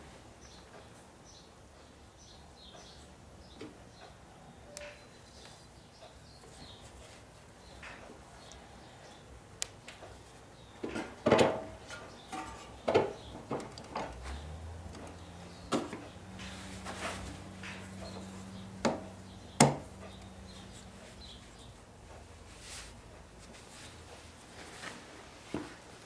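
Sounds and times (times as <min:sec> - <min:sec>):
tools and engine parts clattering: 0:10.9 - 0:18.3.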